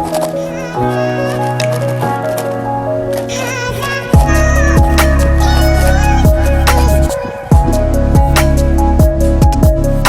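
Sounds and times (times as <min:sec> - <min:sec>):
music with held chords: 0:04.1 - 0:10.0.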